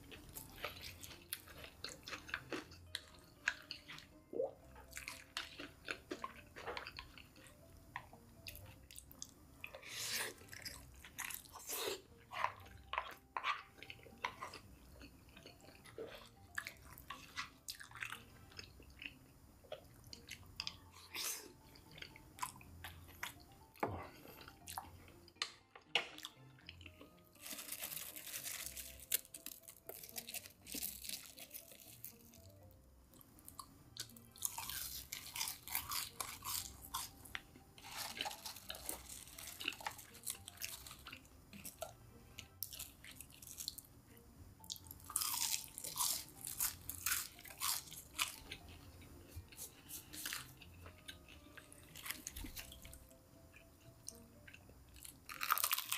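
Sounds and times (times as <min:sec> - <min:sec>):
crunching fried chicken bites: 0:00.0 - 0:04.1, 0:25.4 - 0:32.5, 0:33.9 - 0:43.9, 0:44.6 - 0:53.0, 0:54.9 - 0:55.9
wet chewing: 0:00.0 - 0:23.4.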